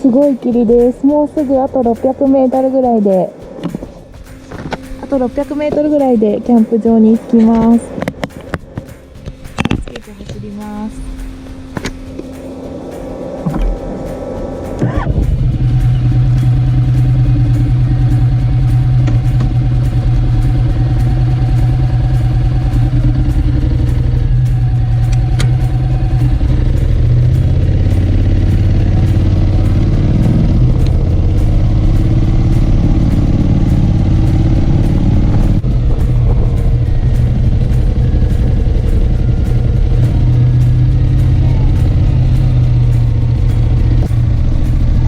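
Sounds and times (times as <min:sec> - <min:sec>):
road noise: 0:00.0 - 0:45.0
motorcycle engine pulling away: 0:15.1 - 0:45.0.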